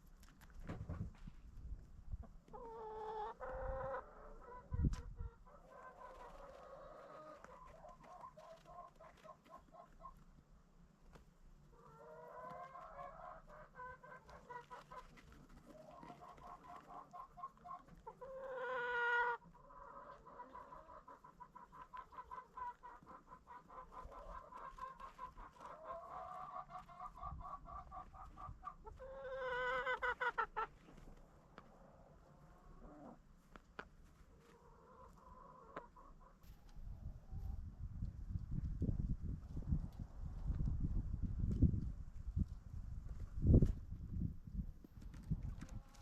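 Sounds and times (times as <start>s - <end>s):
chickens clucking: 2.1s - 10.3s, 11.6s - 37.8s
drawn-out chicken calls: 2.2s - 10.4s, 11.6s - 37.6s.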